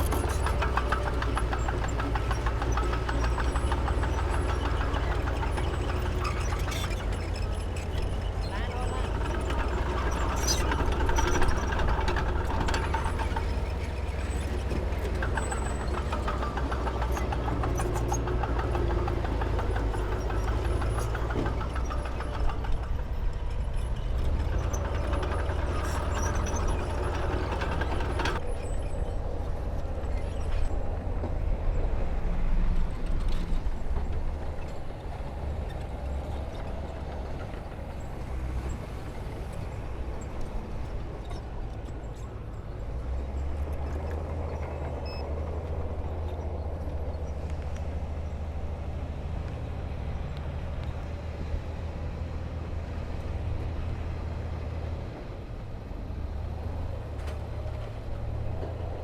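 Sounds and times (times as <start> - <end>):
heavy diesel machinery engine drone: 0.0 - 59.0.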